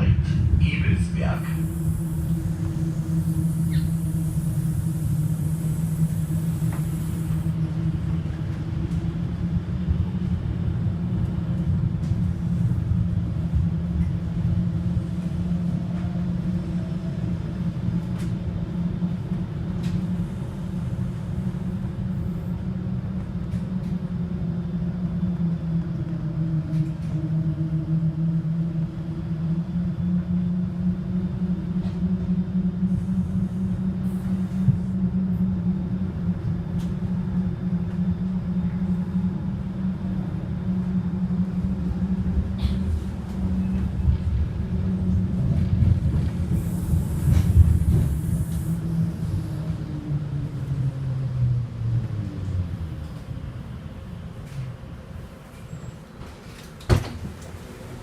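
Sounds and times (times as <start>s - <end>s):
bus drivetrain hum: 0.0s - 58.0s
road rumble: 31.1s - 58.0s.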